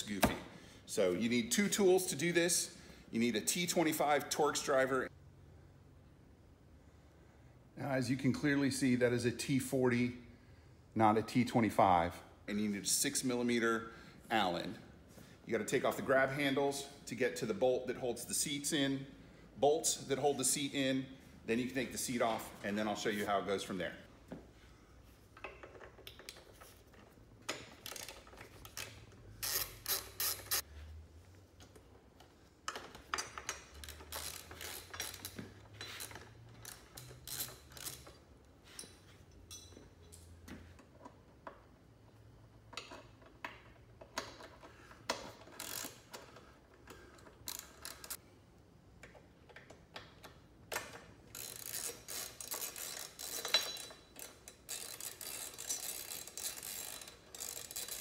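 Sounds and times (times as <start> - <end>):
clinks of tools and metal parts: 25.2 - 30.6, 31.6 - 41.8, 42.4 - 48.2, 49.0 - 58.0
hand ratchet clicking: 27.5 - 30.7, 32.7 - 38.2, 42.7 - 48.2, 49.0 - 58.0.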